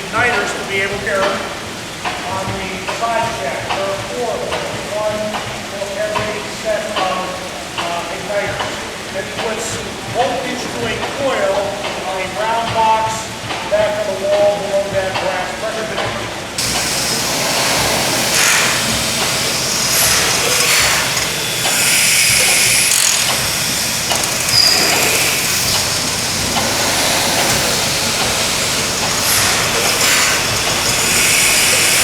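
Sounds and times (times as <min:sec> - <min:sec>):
engine hissing: 0:00.0 - 0:32.0
gas engine running: 0:16.5 - 0:32.0.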